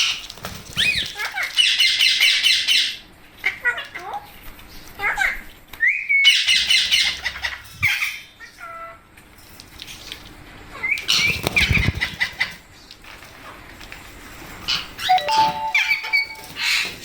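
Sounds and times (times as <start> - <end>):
parakeets flapping wings: 0.0 - 1.7, 11.0 - 15.0.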